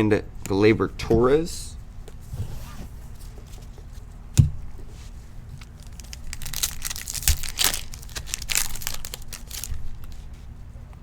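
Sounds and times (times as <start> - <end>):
wrapper tearing and crinkling: 5.6 - 10.2.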